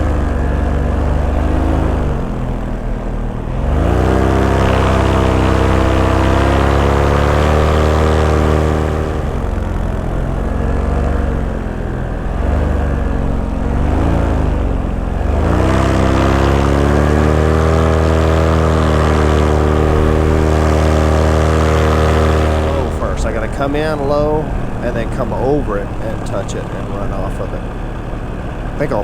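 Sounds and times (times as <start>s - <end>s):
paramotor engine and propeller: 0.0s - 29.0s.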